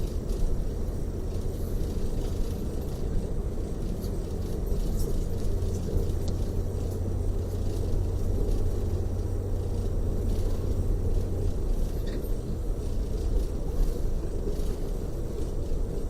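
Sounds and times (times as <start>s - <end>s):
coach engine and tyres rumbling: 0.0s - 16.0s
faint light ticks: 1.2s - 15.9s.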